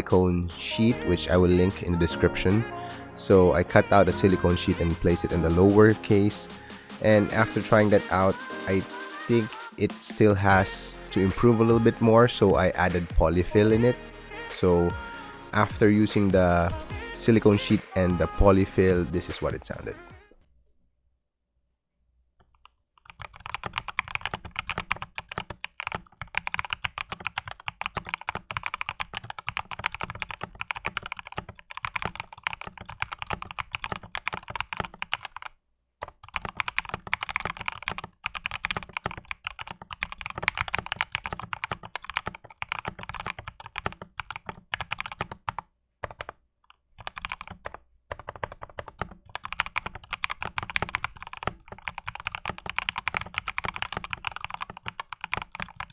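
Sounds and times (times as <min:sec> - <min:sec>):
mechanical keyboard typing: 0:22.6 - 0:55.9.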